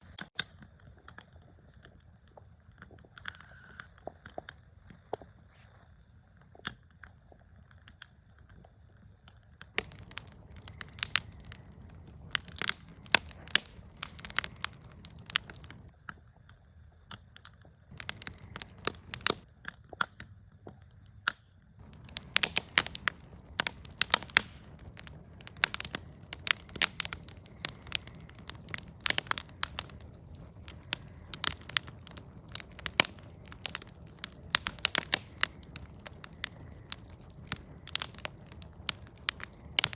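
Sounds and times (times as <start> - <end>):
campfire crackling and popping: 9.8 - 15.9, 17.9 - 19.4, 21.8 - 39.9
low rush of flame: 9.8 - 15.9, 17.9 - 19.4, 21.8 - 39.9.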